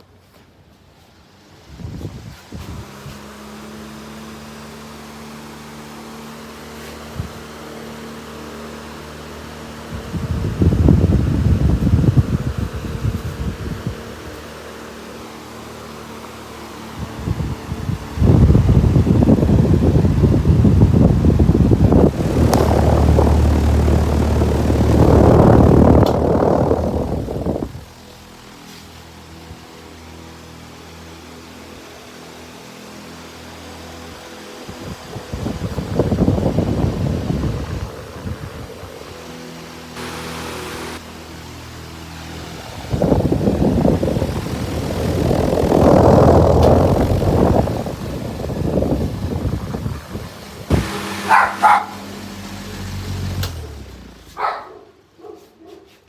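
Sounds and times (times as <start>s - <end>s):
electric fan running: 0.0s - 55.1s
motor hum: 2.7s - 28.8s, 34.3s - 54.8s
fan switch click: 22.1s - 27.5s, 45.0s - 47.7s, 53.4s - 53.7s
dog barking: 51.2s - 52.0s, 54.4s - 56.0s.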